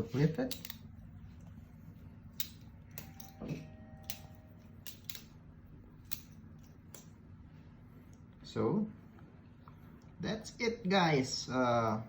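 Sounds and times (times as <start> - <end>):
butterfly knife metal clicks: 0.4 - 0.9, 4.0 - 5.4, 6.0 - 7.1.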